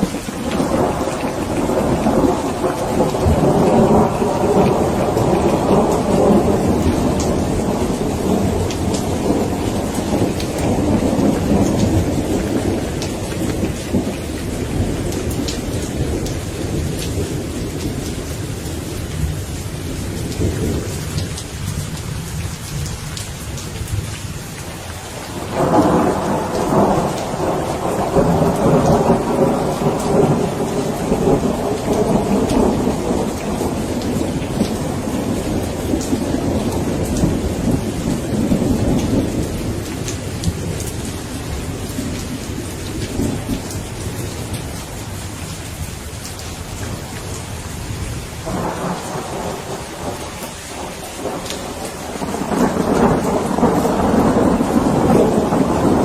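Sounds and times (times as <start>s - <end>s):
thunder rolling: 0.0s - 18.0s, 25.3s - 44.4s, 48.4s - 56.0s
steady rain: 0.0s - 56.0s.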